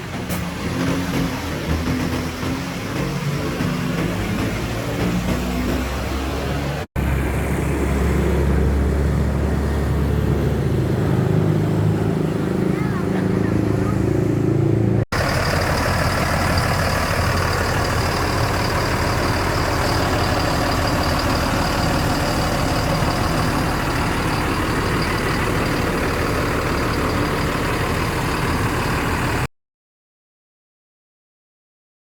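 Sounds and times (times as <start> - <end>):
bus diesel engine idling: 0.0 - 6.9, 15.1 - 29.5.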